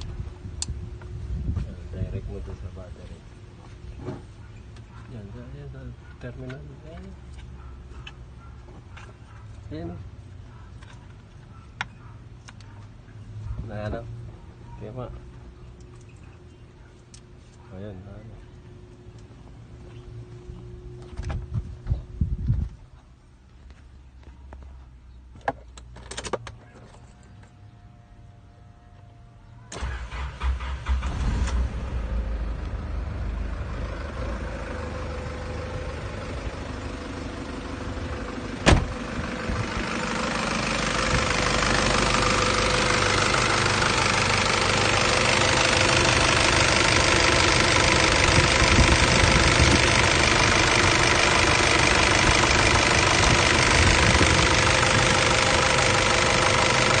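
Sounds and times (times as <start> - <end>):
diesel engine starting and running: 29.5 - 57.0.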